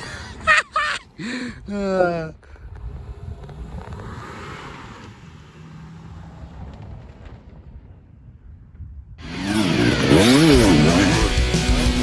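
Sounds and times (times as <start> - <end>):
loud music: 10.1 - 12.0.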